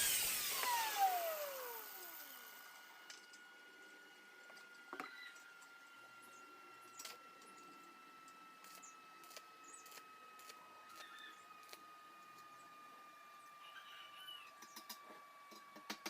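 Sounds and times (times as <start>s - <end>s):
thin high whine: 0.0s - 11.8s.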